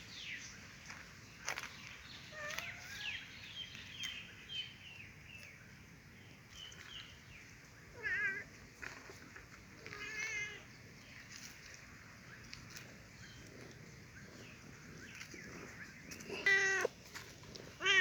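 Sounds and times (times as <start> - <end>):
cat meowing: 8.0 - 8.4, 9.8 - 10.6, 16.3 - 16.9, 17.8 - 18.0
cat chirping: 16.3 - 16.9, 17.8 - 18.0.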